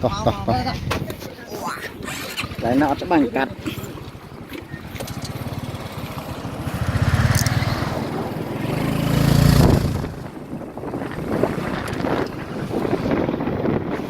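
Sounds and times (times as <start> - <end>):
small engine running: 3.9 - 10.2.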